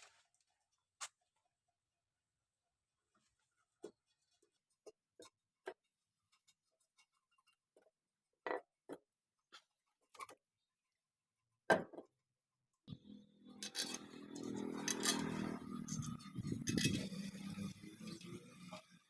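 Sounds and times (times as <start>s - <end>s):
tools and metal parts clinking: 13.4s - 17.5s.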